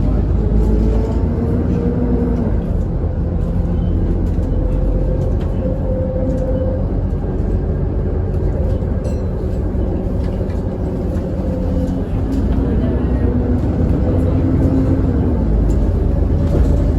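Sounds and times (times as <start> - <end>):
bus diesel engine: 0.0 - 16.9
road rumble: 0.0 - 16.9.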